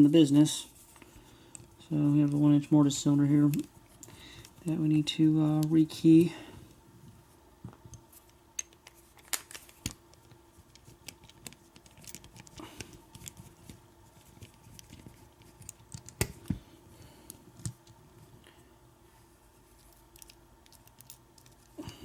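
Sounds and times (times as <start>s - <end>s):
lock cylinder and keys clicking: 10.7s - 12.6s, 20.1s - 21.8s.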